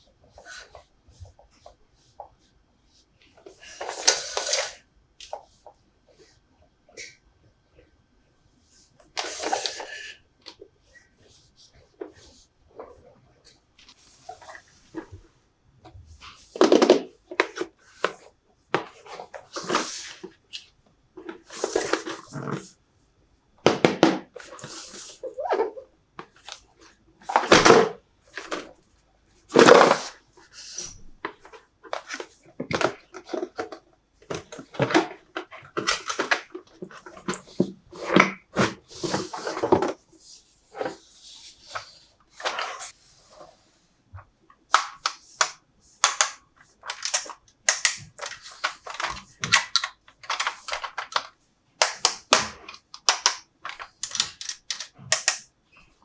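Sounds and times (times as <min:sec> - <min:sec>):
plastic toy pieces clicking: 0:44.7 - 0:55.5.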